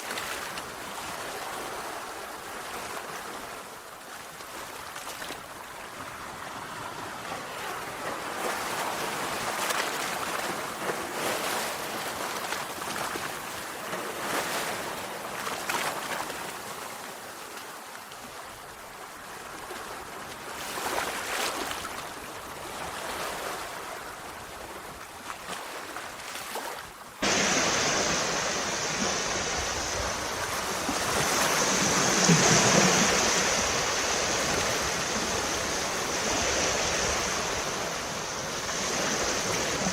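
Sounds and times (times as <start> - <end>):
sea waves washing onto shore: 25.3 - 39.9.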